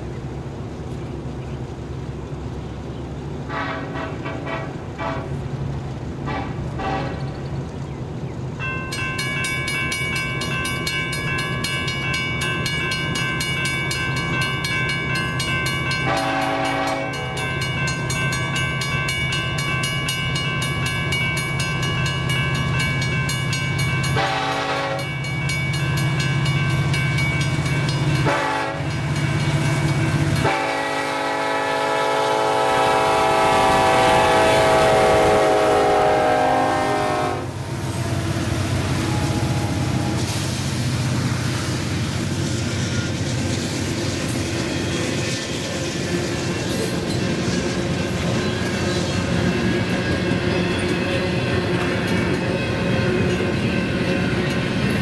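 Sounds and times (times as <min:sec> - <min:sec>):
locomotive engine rumble: 0:00.0 - 0:55.0
locomotive air horn blasts: 0:03.5 - 0:05.4, 0:06.2 - 0:07.2, 0:16.0 - 0:17.4, 0:24.1 - 0:25.1, 0:28.2 - 0:29.0, 0:30.4 - 0:37.6.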